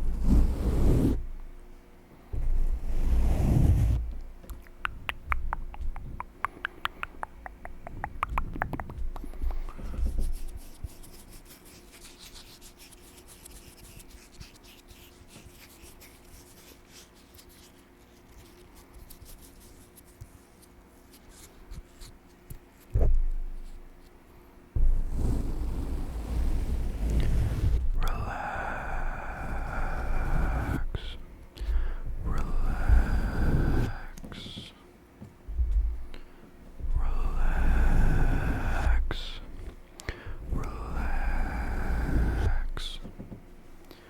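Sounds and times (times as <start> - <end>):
mouth clicks: 4.5 - 9.4.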